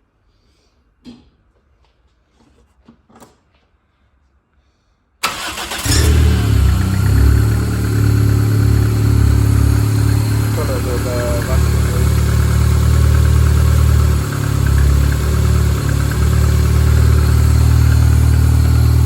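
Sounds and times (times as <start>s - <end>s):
car engine starting and idling: 5.2s - 19.0s.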